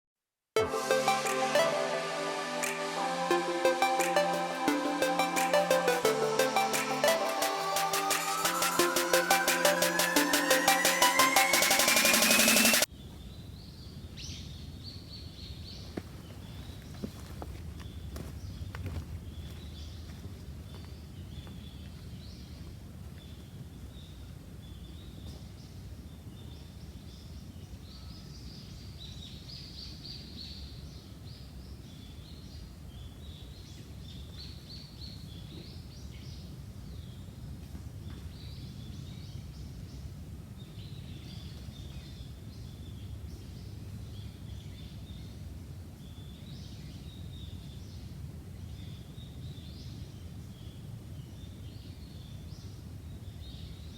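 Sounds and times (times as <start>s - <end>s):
small birds chirping: 13.0s - 25.6s.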